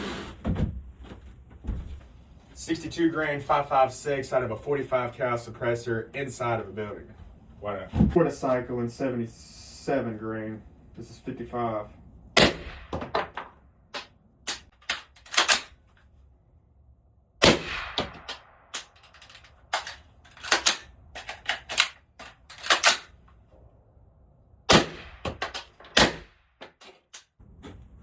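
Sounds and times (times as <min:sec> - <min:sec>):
suppressed rifle shots echoing: 0:17.4 - 0:19.0, 0:24.7 - 0:26.4.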